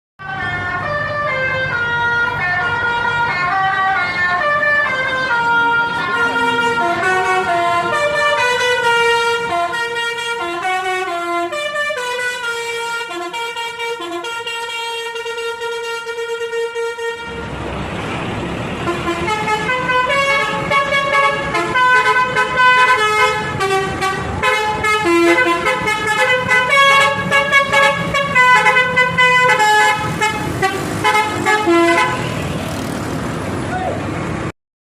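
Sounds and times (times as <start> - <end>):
multi-tone bus air horn tunes: 0.3 - 17.6, 18.8 - 32.6
loud rushing noise: 17.3 - 22.4.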